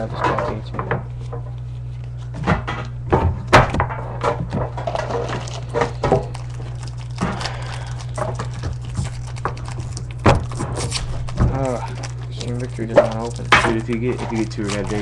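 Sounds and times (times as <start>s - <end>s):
steady low hum: 0.0s - 15.0s
foil wrapper crinkling and tearing: 4.5s - 15.0s.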